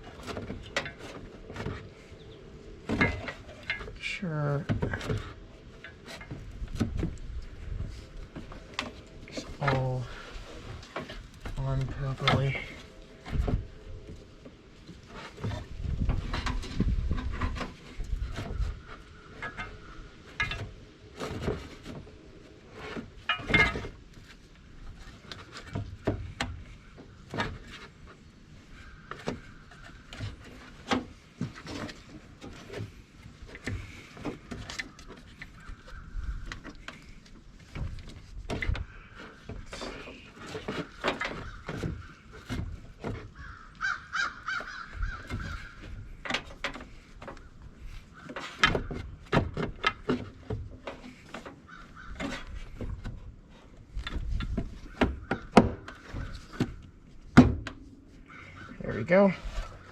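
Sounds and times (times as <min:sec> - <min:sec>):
knocks and clunks of parts: 0:00.0 - 0:59.9
crows cawing: 0:34.9 - 0:36.6, 0:41.3 - 0:42.4, 0:43.3 - 0:46.0, 0:51.6 - 0:52.5, 0:58.2 - 0:58.8.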